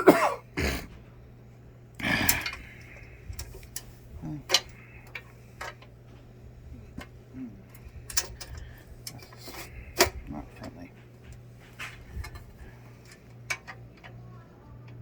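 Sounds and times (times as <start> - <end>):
hardware clicks and knocks: 6.9 - 15.0.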